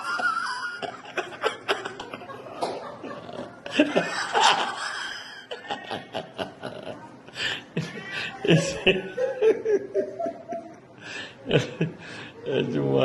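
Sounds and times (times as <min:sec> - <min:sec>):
person laughing: 0:00.0 - 0:07.1.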